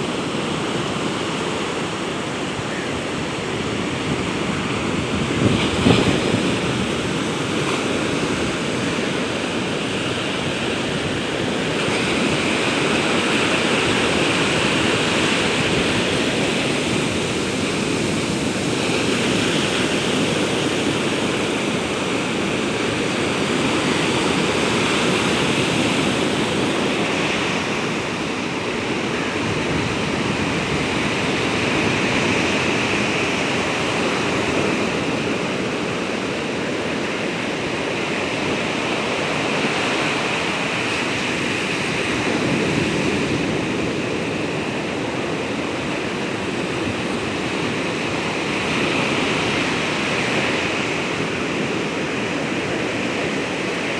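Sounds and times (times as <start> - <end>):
ocean waves breaking on beach: 0.0 - 53.9.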